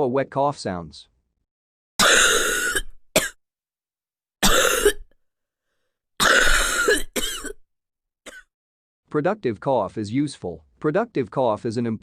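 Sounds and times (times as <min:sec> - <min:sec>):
person coughing wetly: 0:02.0 - 0:03.4, 0:04.4 - 0:05.1, 0:06.2 - 0:07.6, 0:08.2 - 0:08.5.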